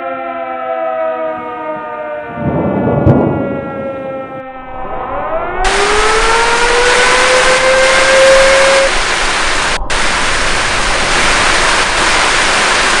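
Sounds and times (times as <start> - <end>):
siren tone: 0.0 - 10.8
static hiss: 5.7 - 13.0.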